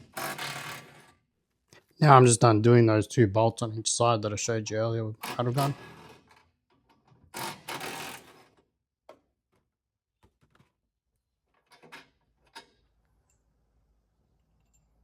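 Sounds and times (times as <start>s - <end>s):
impact wrench running: 0.0s - 1.0s.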